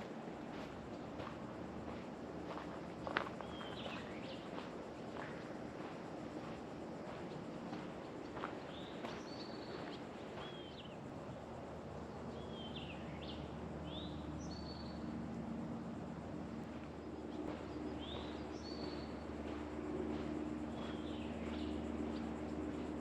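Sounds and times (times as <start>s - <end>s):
steady low hum: 0.0s - 23.0s
songbird singing: 3.4s - 4.7s, 8.3s - 11.0s, 12.0s - 15.2s, 17.2s - 23.0s.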